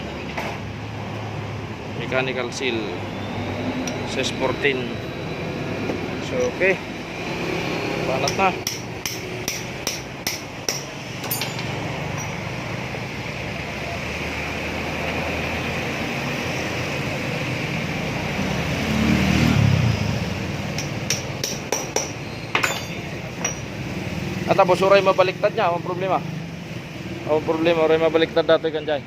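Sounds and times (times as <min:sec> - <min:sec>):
hammer tapping on metal: 0:08.2 - 0:12.4, 0:20.7 - 0:23.7.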